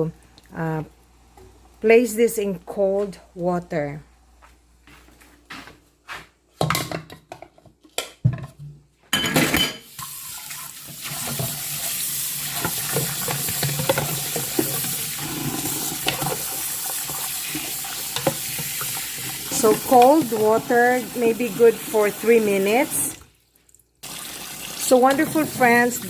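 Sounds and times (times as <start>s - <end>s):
tap water running into bowl: 10.0s - 26.0s.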